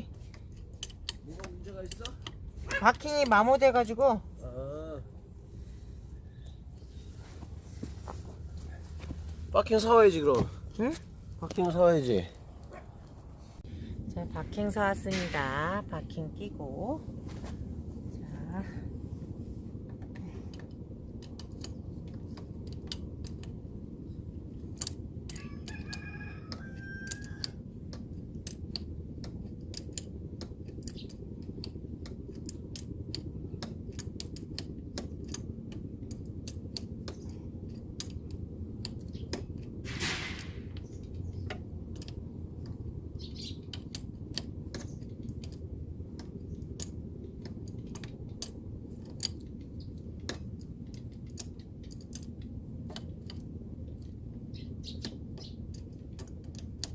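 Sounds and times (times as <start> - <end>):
tools clicking and tapping metal: 0.0 - 4.0, 24.7 - 42.9, 43.6 - 54.2, 54.9 - 56.9
low hum: 2.0 - 25.6.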